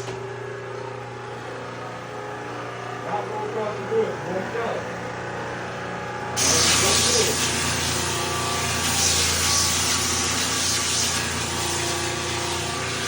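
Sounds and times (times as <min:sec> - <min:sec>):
floor sanding machine motor hum: 0:00.0 - 0:13.0
abrasive sanding hiss on wood: 0:06.4 - 0:13.0.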